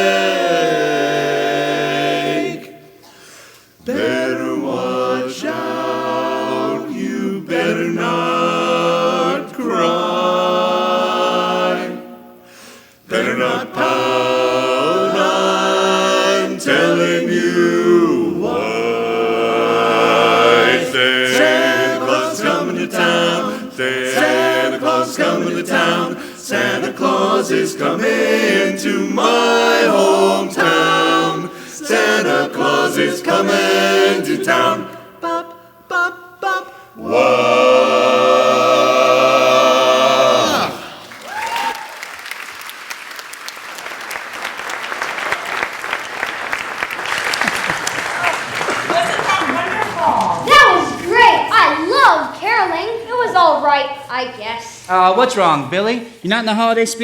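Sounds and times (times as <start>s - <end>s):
male chorus singing a cappella: 0.0s - 3.0s, 3.8s - 41.2s.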